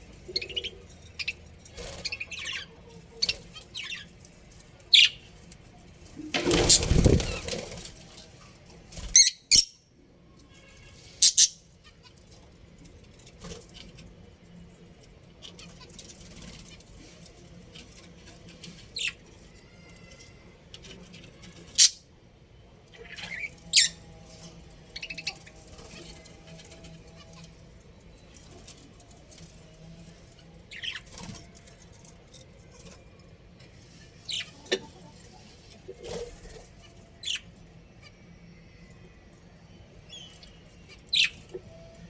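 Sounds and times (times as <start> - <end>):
budgerigars chirping and squawking: 0.0 - 5.5, 6.5 - 7.8, 9.0 - 9.8, 11.0 - 12.4, 17.7 - 19.5, 20.2 - 22.0, 22.9 - 32.0, 33.8 - 38.2, 40.1 - 41.6.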